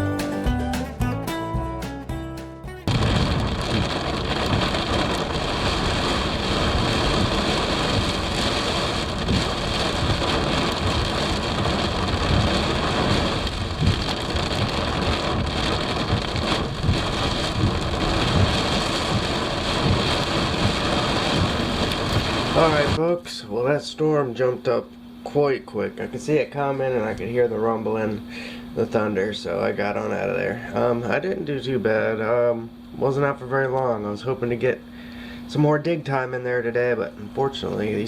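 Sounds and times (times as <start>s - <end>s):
heavy rain pouring: 2.9s - 23.0s.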